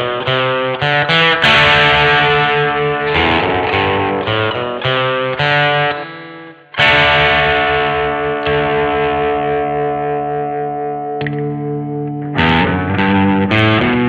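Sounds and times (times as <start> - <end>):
distorted electric guitar chords: 0.0 - 14.0.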